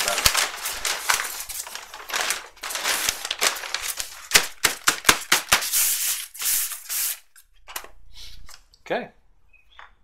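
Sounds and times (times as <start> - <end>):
stiff paper crackling: 0.0 - 7.2
sandpaper rubbing over paper: 5.1 - 7.3.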